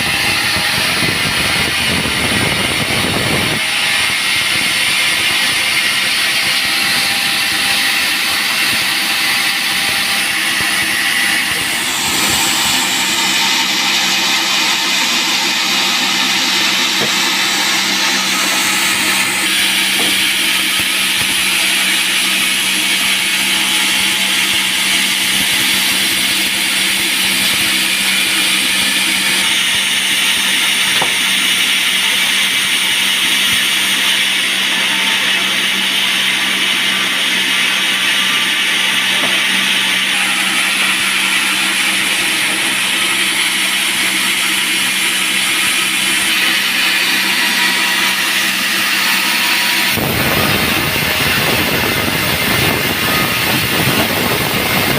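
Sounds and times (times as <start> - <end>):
low motor tone: 6.7 - 22.6.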